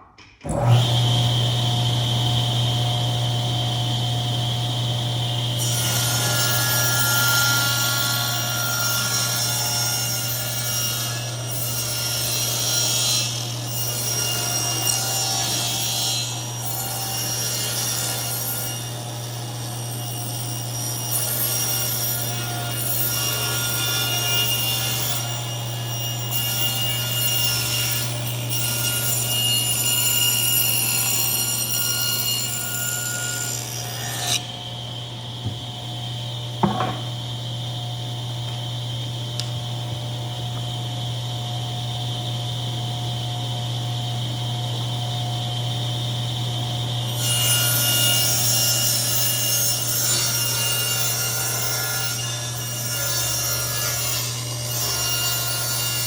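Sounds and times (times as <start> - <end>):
power saw cutting wood: 0.4 - 4.0, 5.4 - 34.6, 47.1 - 56.0
motor hum: 34.4 - 46.9.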